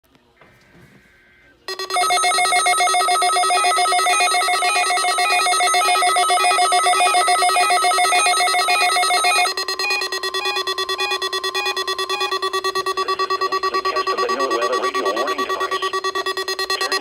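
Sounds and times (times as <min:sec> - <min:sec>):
weather radio alert beeping: 0:06.2 - 0:17.0.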